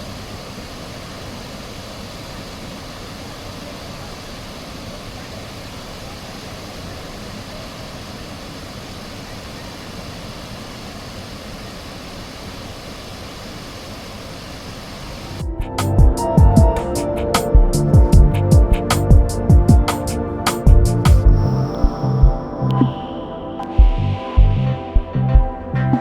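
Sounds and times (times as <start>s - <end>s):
waterfall rushing: 0.0s - 15.4s
music: 15.4s - 26.0s.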